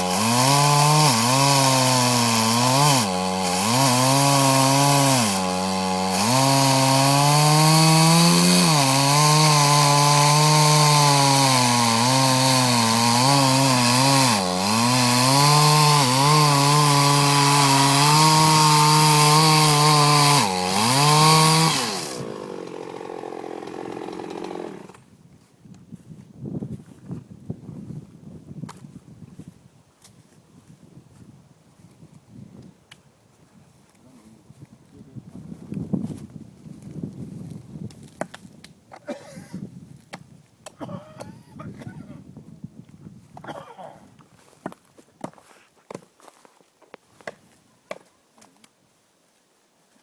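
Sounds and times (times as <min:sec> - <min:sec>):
chainsaw cutting wood: 0:00.0 - 0:25.1.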